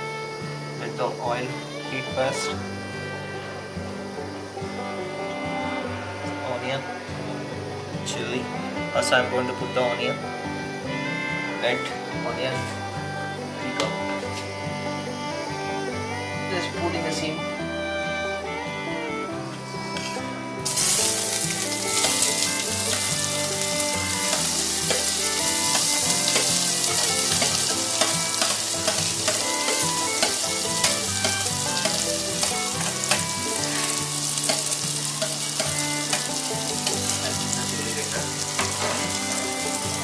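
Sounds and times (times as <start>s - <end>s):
background music: 0.0s - 40.0s
onion sizzling in oil: 20.0s - 40.0s
oil ticks and spits: 20.6s - 40.0s.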